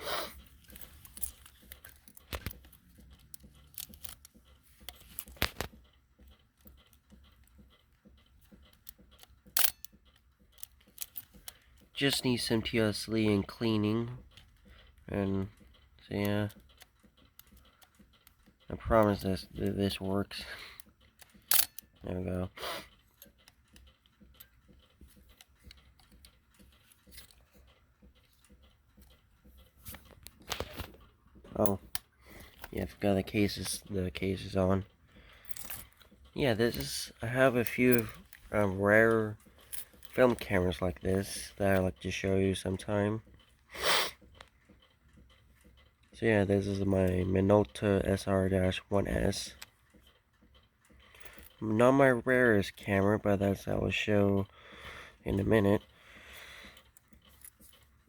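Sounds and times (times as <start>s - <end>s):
camera clicks and rustling: 0.4s - 6.0s, 28.6s - 31.1s.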